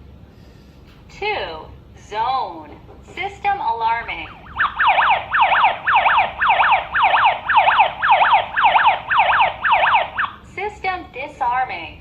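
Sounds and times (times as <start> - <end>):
alarm siren falling whoop: 4.2 - 10.4.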